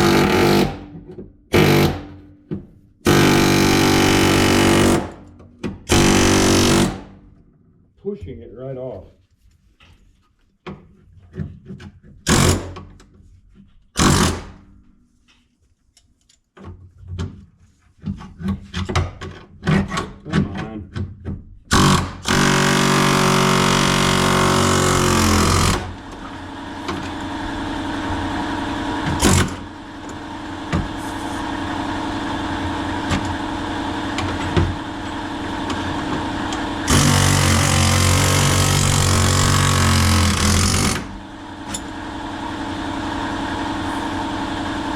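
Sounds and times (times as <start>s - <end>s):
air chisel hammering sheet metal: 3.1s - 5.1s, 5.9s - 7.0s, 14.0s - 14.5s, 21.7s - 26.0s, 34.4s - 42.0s.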